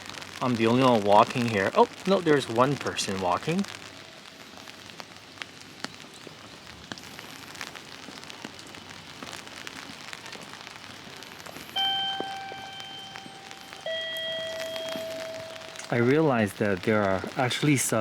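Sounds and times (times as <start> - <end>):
rain pattering on an umbrella: 0.0 - 18.0
steady pitched tone: 11.8 - 16.2.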